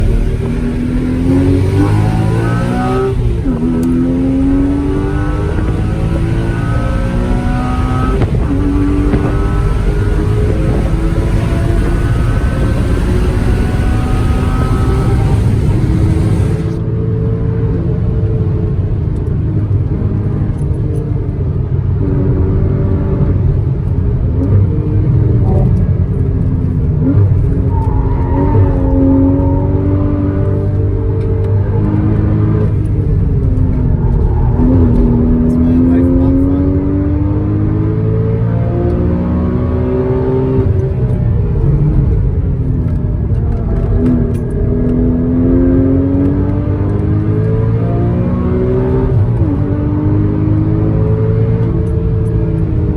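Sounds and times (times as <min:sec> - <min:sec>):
car engine pulling under load: 0:00.0 - 0:16.8
car engine running hard: 0:00.0 - 0:52.9
road and wind noise: 0:00.0 - 0:52.9.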